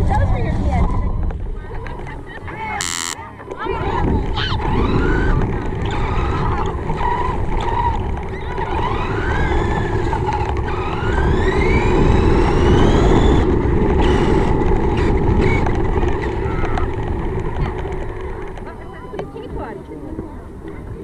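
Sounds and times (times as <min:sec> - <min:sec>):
remote-control car motor whining: 0:02.8 - 0:03.2, 0:04.4 - 0:16.8.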